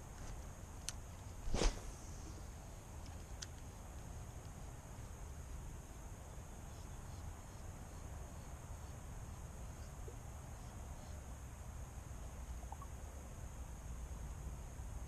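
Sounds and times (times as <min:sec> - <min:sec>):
high insect drone: 0:00.0 - 0:15.0
faint short chirps: 0:12.6 - 0:12.9.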